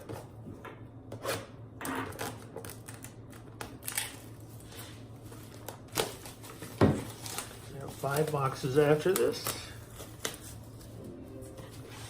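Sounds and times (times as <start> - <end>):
packaging clicks and rustles: 5.4 - 10.6.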